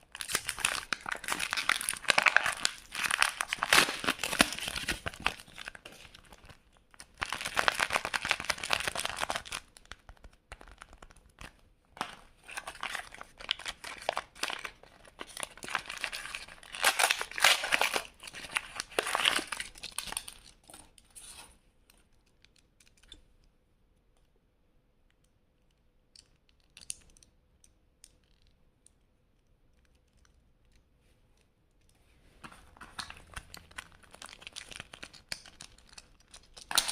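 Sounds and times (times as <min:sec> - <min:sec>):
plastic wrappers crinkling and tearing: 0:00.0 - 0:21.5, 0:32.4 - 0:36.9.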